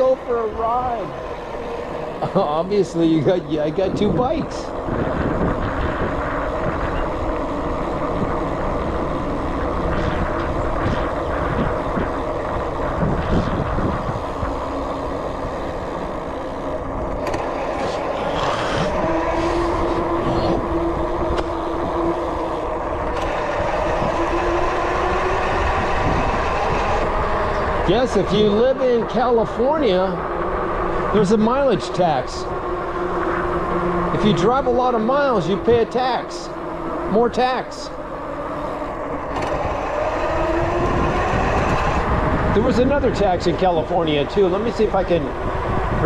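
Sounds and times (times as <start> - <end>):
vehicle and road noise: 0.0 - 46.0
humming tone: 4.0 - 35.8.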